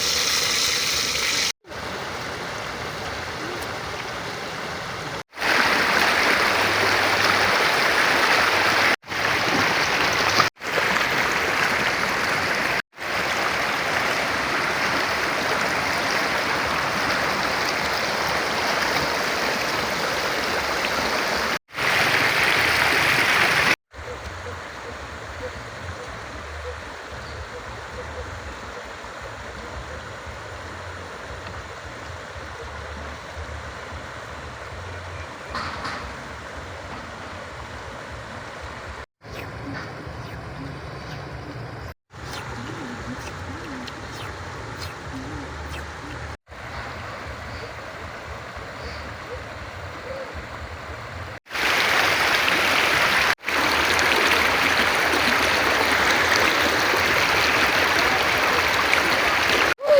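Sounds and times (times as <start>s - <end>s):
river water rushing: 5.3s - 23.8s, 51.5s - 59.9s.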